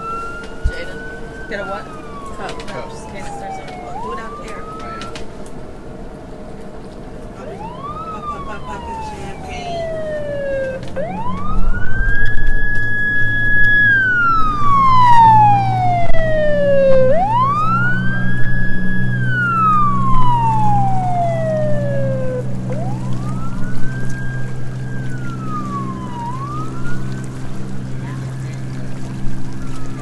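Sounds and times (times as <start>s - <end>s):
siren wailing: 0.0s - 5.3s, 7.3s - 30.0s
steady low hum: 5.6s - 29.6s.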